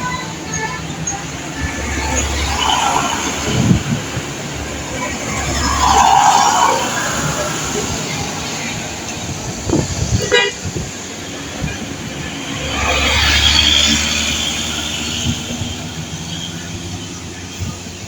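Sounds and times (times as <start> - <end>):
bus engine rumble passing: 0.0 - 18.0
bus horn toot: 10.1 - 10.9.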